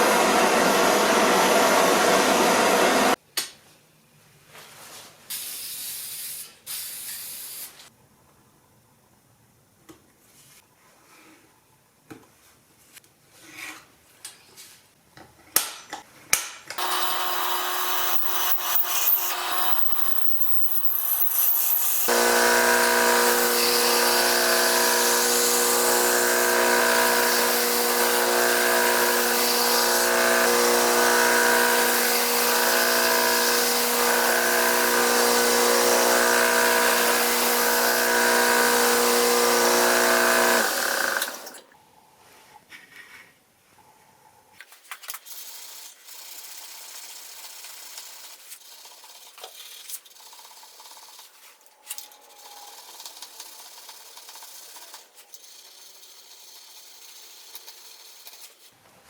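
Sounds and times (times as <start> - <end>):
electric power tool on saw blade: 0.0 - 3.2, 16.8 - 41.6.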